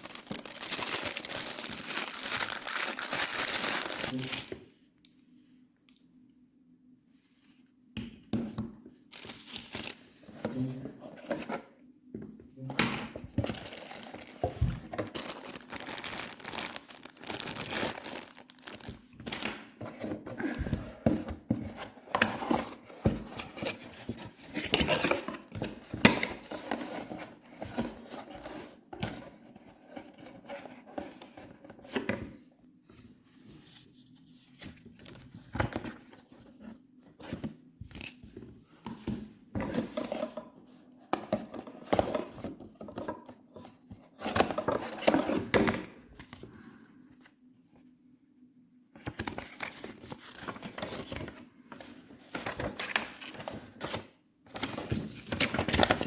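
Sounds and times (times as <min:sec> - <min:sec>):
packaging rubbing and crinkling: 0:00.0 - 0:04.5, 0:13.4 - 0:19.4.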